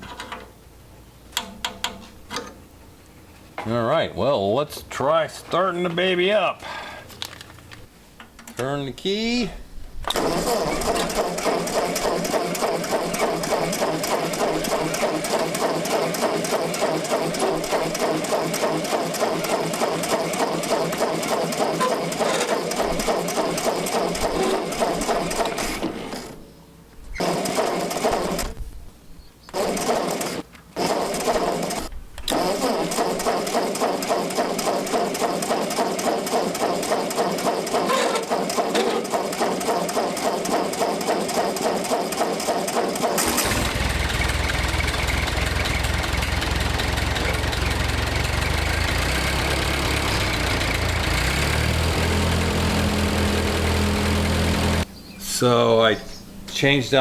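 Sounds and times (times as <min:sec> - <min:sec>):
tractor engine clattering: 0:10.1 - 0:26.3, 0:29.5 - 0:54.9.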